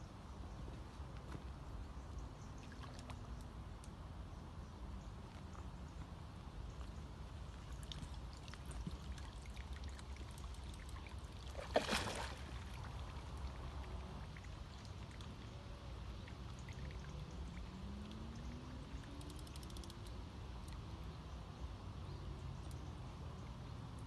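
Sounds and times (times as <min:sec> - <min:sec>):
faint scattered clicks: 0:02.9 - 0:04.0, 0:18.0 - 0:20.9, 0:22.6 - 0:23.0.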